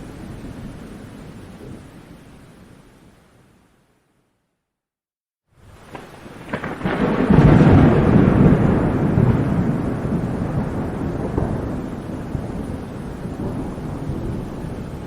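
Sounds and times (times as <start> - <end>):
rain: 0.0 - 4.7, 5.5 - 15.0
thunder cracking and rumbling: 5.7 - 15.0.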